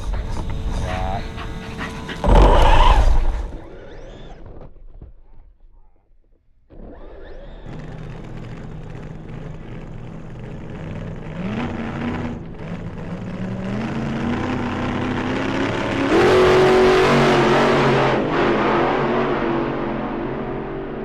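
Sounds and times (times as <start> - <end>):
electric toy car motor whining: 0.0 - 4.7, 6.7 - 9.9
tyre noise: 0.0 - 6.0.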